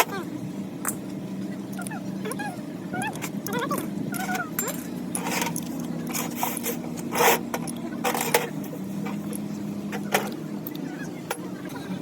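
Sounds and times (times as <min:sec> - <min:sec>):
low machine hum: 0:00.0 - 0:12.0
tools scraping: 0:04.2 - 0:09.2.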